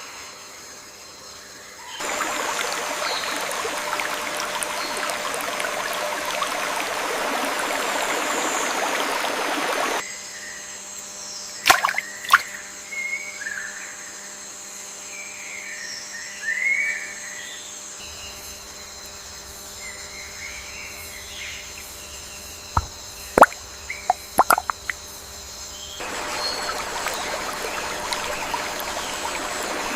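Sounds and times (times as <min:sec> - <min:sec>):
rushing stream water: 0:02.0 - 0:10.0, 0:11.7 - 0:12.6, 0:22.8 - 0:25.0, 0:26.0 - 0:29.9
whistled bird calls: 0:25.9 - 0:29.9.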